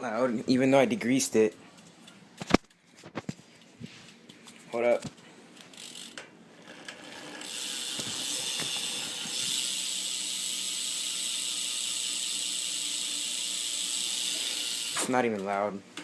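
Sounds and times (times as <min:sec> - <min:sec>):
bicycle hub pawls clicking buzz: 0:05.6 - 0:15.1.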